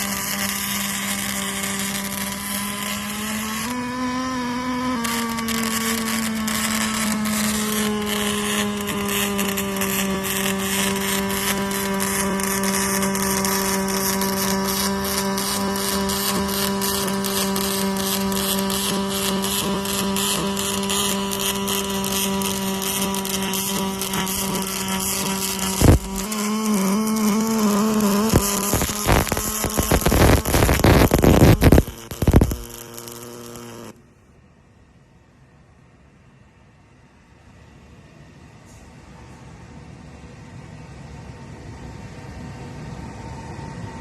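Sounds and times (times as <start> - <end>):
arc welding buzz and crackle: 0.0 - 34.1.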